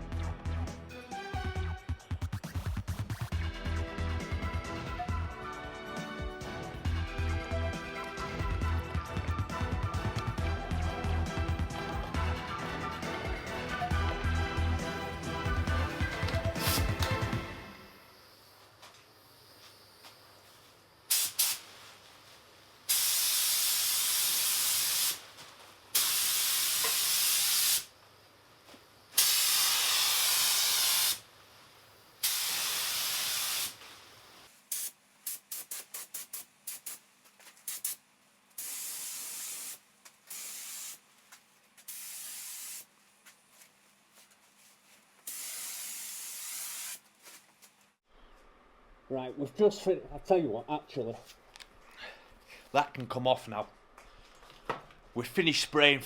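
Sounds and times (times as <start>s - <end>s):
spray gun trigger bursts: 16.3s - 17.3s, 21.1s - 21.6s, 22.9s - 25.2s, 26.0s - 27.9s, 29.2s - 31.2s, 32.2s - 33.8s, 34.7s - 38.0s, 38.6s - 41.0s, 41.8s - 42.9s, 45.2s - 47.0s
paint spray gun hissing: 16.4s - 17.2s, 21.1s - 21.7s, 22.9s - 25.3s, 25.9s - 27.9s, 29.2s - 31.3s, 32.2s - 33.9s, 34.7s - 38.0s, 38.6s - 41.0s, 41.8s - 42.9s, 45.2s - 47.0s.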